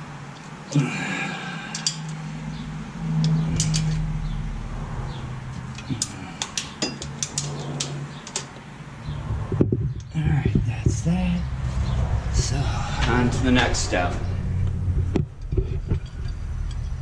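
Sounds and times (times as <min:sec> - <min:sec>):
steady low hum: 0:00.0 - 0:17.0
hand tools clicking and clinking: 0:01.6 - 0:02.2, 0:03.2 - 0:04.0, 0:05.6 - 0:08.7.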